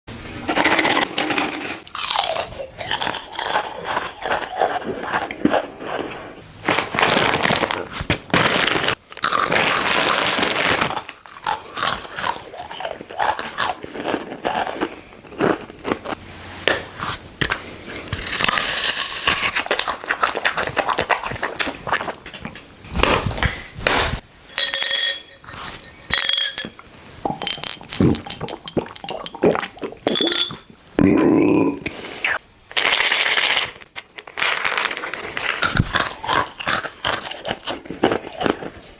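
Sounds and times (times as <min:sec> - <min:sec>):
crunching bites and chewing: 0:01.9 - 0:06.2, 0:06.8 - 0:22.2, 0:32.8 - 0:38.9.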